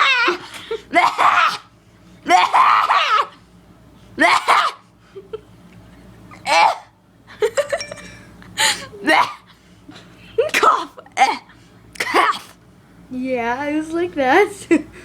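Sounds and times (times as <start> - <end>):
child imitating coughs: 0.9 - 1.5, 10.5 - 12.6.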